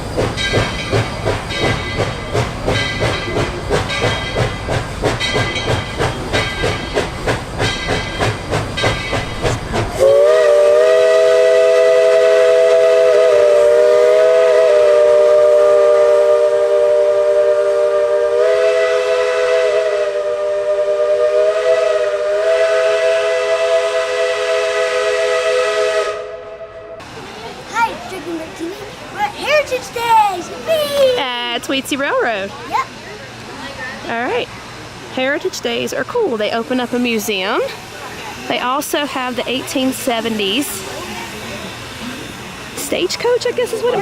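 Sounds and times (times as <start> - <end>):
steam locomotive chuffing and hissing: 0.0 - 44.0
steam whistle chord: 10.0 - 27.0.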